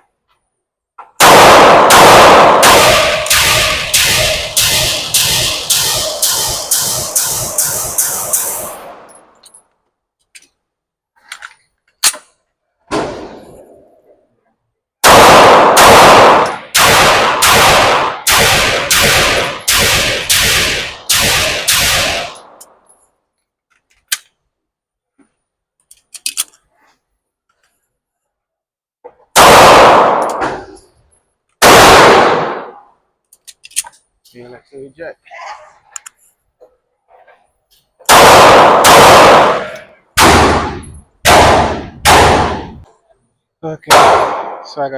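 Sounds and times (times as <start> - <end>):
pistol shots echoing indoors: 1.2 - 9.1, 15.0 - 22.6, 29.3 - 30.8, 31.6 - 33.0, 38.1 - 42.8, 43.9 - 44.7
gun handling clicks: 11.2 - 12.4, 23.6 - 24.4, 25.8 - 26.6, 33.2 - 34.0.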